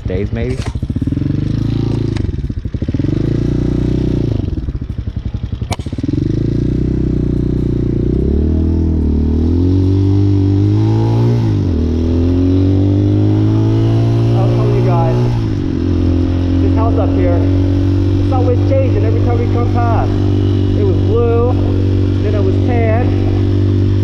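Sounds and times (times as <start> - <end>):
motorcycle engine accelerating: 0.0 - 24.0
sharp click: 5.6 - 6.0.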